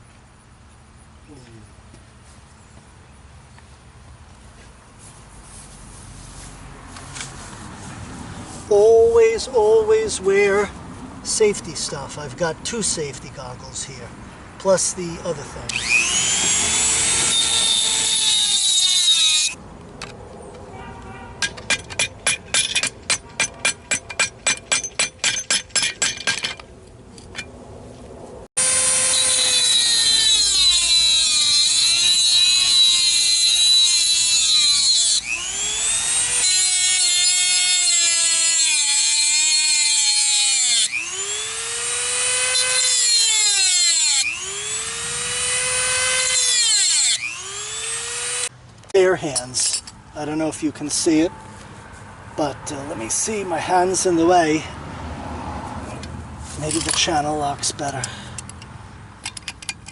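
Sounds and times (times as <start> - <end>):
rotary tool grinding metal: 15.7 - 19.6, 28.6 - 48.5.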